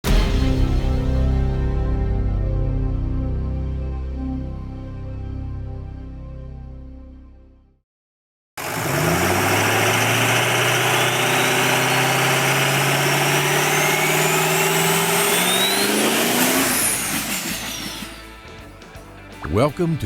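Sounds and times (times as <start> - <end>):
vehicle engine accelerating: 8.6 - 18.4.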